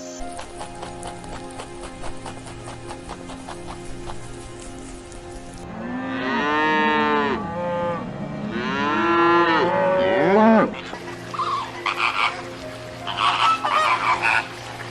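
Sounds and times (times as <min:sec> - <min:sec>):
cow mooing: 0:05.7 - 0:11.0.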